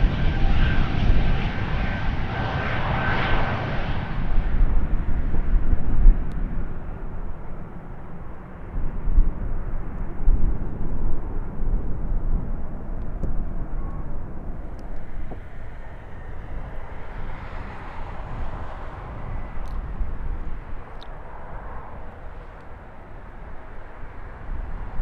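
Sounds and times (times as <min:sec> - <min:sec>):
hissing jet whine: 0:00.0 - 0:05.8, 0:14.5 - 0:24.5
airliner engines rumbling: 0:00.0 - 0:25.0.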